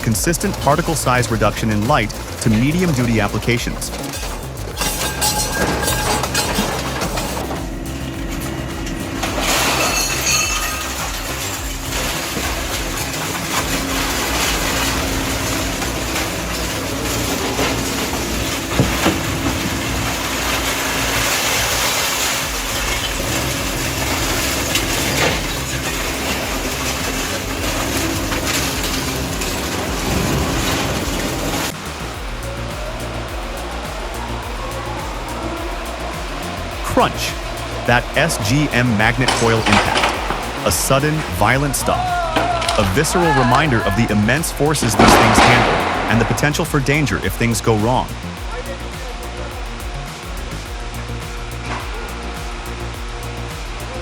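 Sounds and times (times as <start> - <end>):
machine drive drone: 0.0 - 54.0
shredder grinding scrap metal: 3.9 - 32.2.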